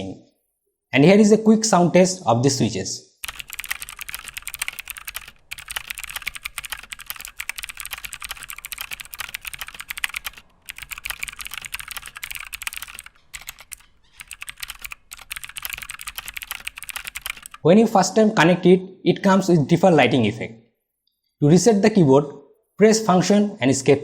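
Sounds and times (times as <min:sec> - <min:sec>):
clicky keyboard typing: 0:03.2 - 0:17.6.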